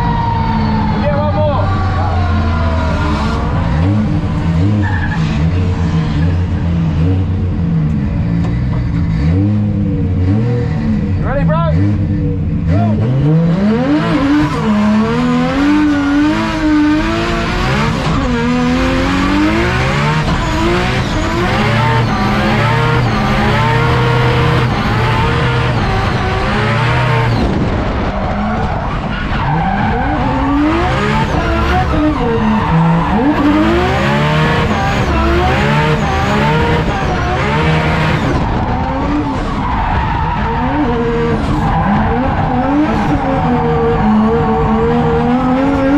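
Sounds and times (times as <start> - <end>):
car engine revving: 0.0 - 45.9
tyre squeal and skidding: 4.6 - 6.4, 17.9 - 27.5, 28.1 - 37.2, 38.1 - 45.9.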